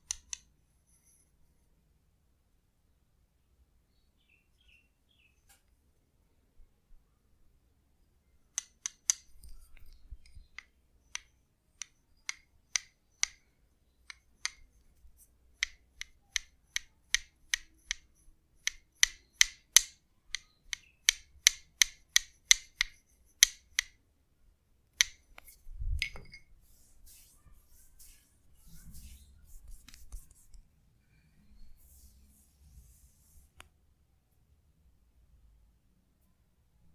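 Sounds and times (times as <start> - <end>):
wooden mallet striking wooden wedge: 18.6 - 23.9.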